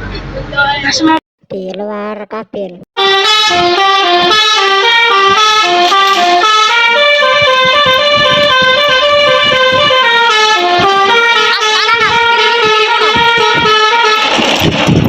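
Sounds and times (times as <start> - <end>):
musical bus horn melody: 3.0 - 14.7.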